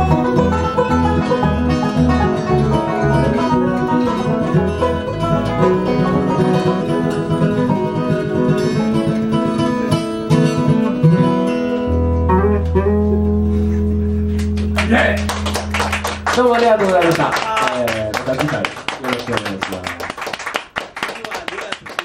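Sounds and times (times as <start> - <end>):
strummed acoustic guitar: 0.0 - 16.3
bass low notes: 0.0 - 16.4
banjo picking: 0.0 - 16.5.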